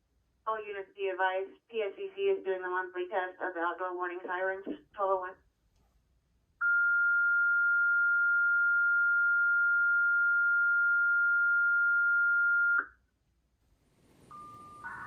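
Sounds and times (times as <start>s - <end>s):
high-pitched radio tone: 14.4s - 15.0s.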